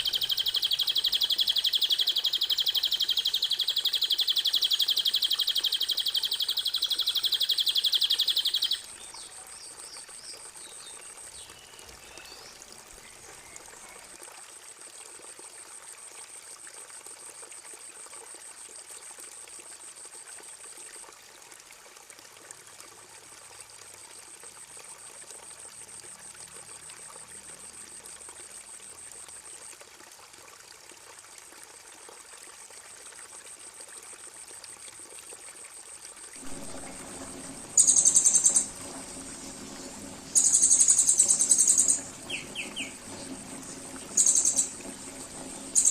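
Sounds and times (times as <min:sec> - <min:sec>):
songbird trilling: 0:00.0 - 0:09.4, 0:36.4 - 0:45.9
faint bird chirps: 0:00.0 - 0:14.2, 0:36.5 - 0:45.9
running water: 0:00.0 - 0:45.9
high fast-pulsing buzz: 0:36.4 - 0:45.9.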